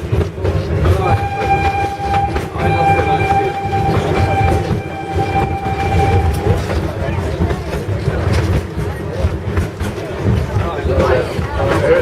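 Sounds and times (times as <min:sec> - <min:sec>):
carriages clattering: 0:00.0 - 0:12.0
train running rumble: 0:00.0 - 0:12.0
steam locomotive whistle blasts: 0:01.0 - 0:06.9.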